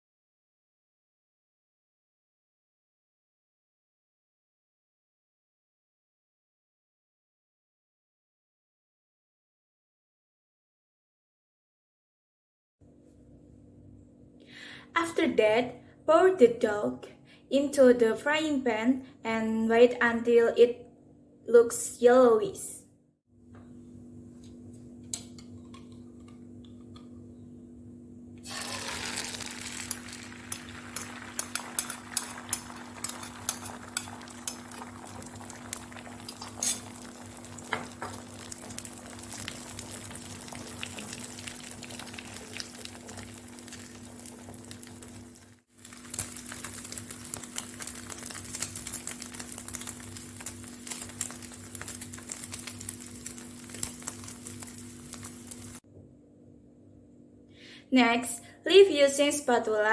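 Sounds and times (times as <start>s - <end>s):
faint hum: 12.9s - 22.2s
egg sizzling in frying pan: 28.4s - 55.8s.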